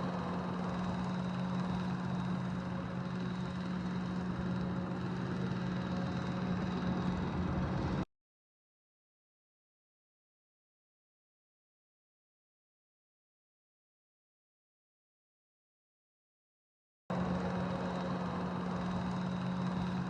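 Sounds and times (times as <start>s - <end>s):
vehicle engine humming: 0.0s - 8.0s, 17.1s - 20.0s.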